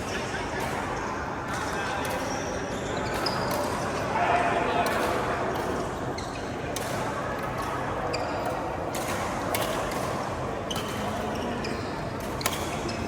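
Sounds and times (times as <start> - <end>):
murmur of voices: 0.0 - 13.0
shoe squeaks on court floor: 2.2 - 4.0, 10.7 - 13.0
racket hitting shuttlecock: 8.4 - 11.6, 12.2 - 12.9.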